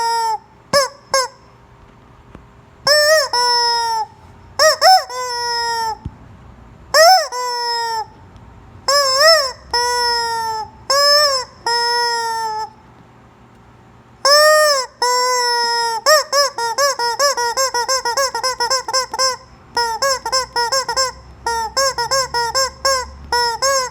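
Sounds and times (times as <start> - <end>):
rubber chicken toy squawking: 0.0 - 1.5, 2.9 - 6.1, 6.9 - 8.2, 8.8 - 12.8, 14.2 - 23.9.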